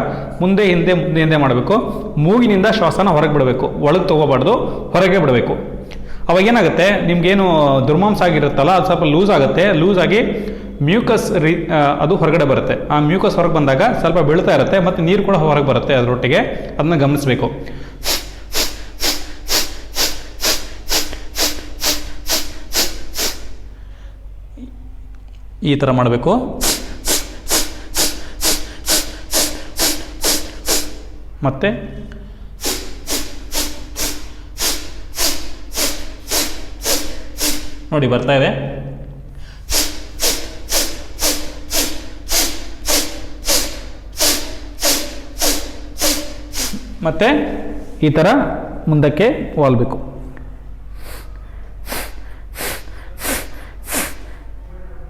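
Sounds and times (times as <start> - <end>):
sharp nasal exhalations: 17.6 - 24.8, 26.6 - 31.4, 32.0 - 37.9, 39.3 - 48.0, 50.9 - 54.6
sharp breaths through the nose: 17.7 - 24.3, 26.6 - 31.3, 32.2 - 37.9, 39.4 - 47.0, 50.9 - 54.6.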